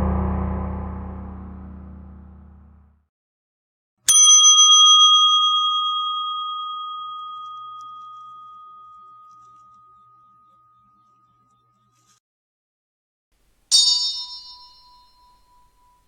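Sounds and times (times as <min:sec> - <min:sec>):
low sound: 0:00.0 - 0:03.0
small metal bell ringing: 0:04.1 - 0:11.9, 0:13.7 - 0:16.0.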